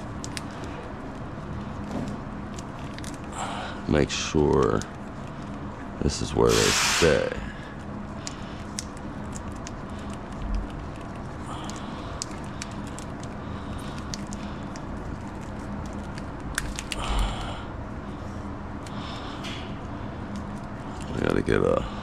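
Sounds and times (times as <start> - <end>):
wiring and tape clicking: 0.0 - 3.4, 4.3 - 5.8, 7.8 - 17.2, 18.7 - 21.7
steady low hum: 0.0 - 22.0.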